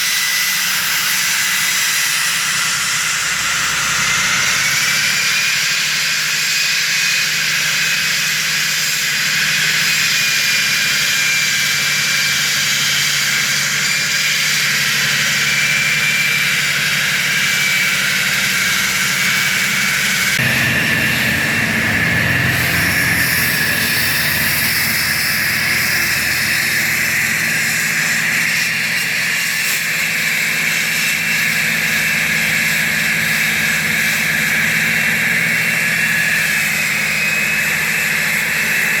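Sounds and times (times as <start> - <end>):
concrete saw whining: 0.0 - 39.0.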